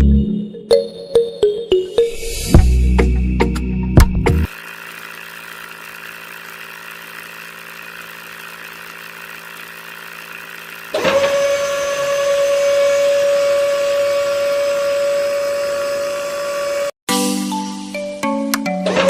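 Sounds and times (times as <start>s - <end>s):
small electric motor whining: 4.4s - 17.0s.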